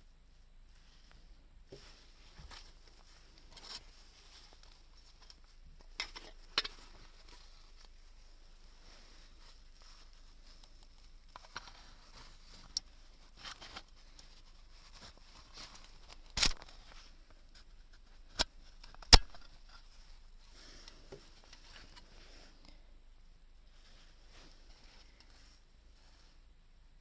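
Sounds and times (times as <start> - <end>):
small objects clicking and knocking: 18.4 - 19.6.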